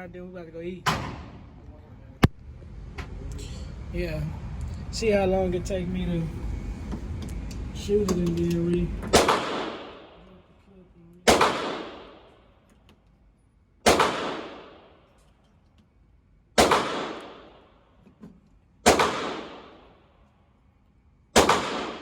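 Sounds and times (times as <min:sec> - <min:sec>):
gunshots with echo: 0:09.1 - 0:10.2, 0:11.3 - 0:12.4, 0:13.8 - 0:15.0, 0:16.6 - 0:17.7, 0:18.8 - 0:20.0, 0:21.4 - 0:22.0.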